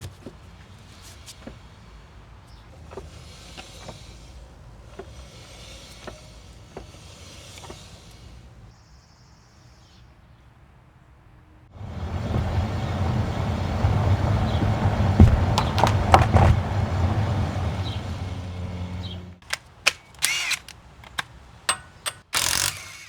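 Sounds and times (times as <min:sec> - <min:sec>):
brakes clicking: 0:00.0 - 0:08.8, 0:12.0 - 0:23.0
hissing scrape: 0:02.7 - 0:08.7.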